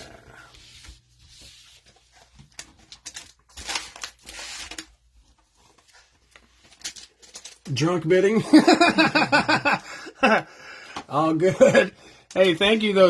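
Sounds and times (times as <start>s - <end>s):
cellophane wrapper crinkling and tearing: 2.6s - 5.0s, 6.4s - 7.8s.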